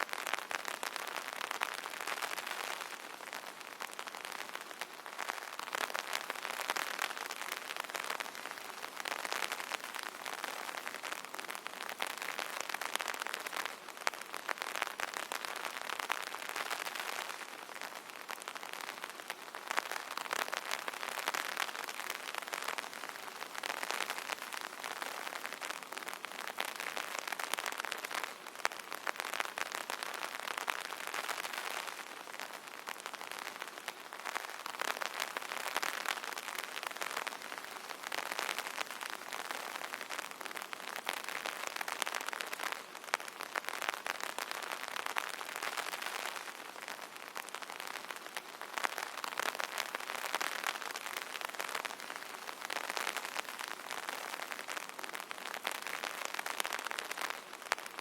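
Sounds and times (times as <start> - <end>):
rain pattering on an umbrella: 0.0 - 58.0.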